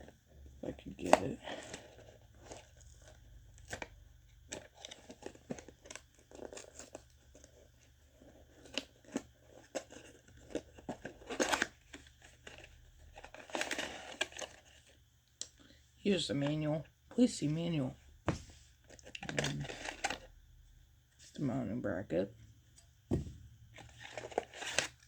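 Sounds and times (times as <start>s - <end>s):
packaging clicks and crinkling: 0.8s - 15.0s, 18.8s - 20.3s, 23.7s - 25.0s
packaging rustling: 0.9s - 15.0s, 18.3s - 20.3s, 23.1s - 25.0s.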